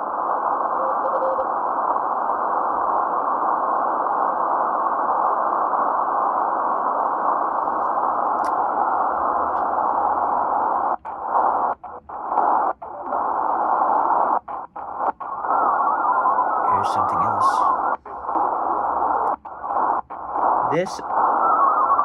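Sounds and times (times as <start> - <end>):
shortwave radio static hiss: 0.0 - 22.0
radio muting chuff: 6.9 - 22.0.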